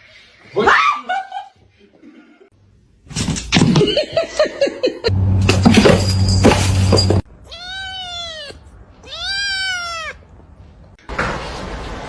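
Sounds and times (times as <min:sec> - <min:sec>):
low hum: 0:05.1 - 0:07.3
cat meowing: 0:07.4 - 0:10.3.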